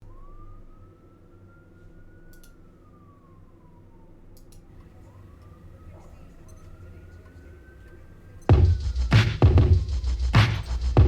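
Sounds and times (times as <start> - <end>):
siren wailing faintly: 0.0 - 11.0
faint clicks: 2.3 - 2.6
low hum: 4.8 - 11.0.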